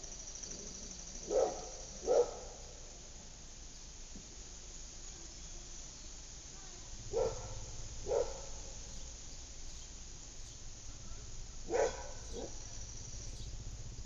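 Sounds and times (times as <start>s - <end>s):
sharp animal calls: 7.1s - 13.7s.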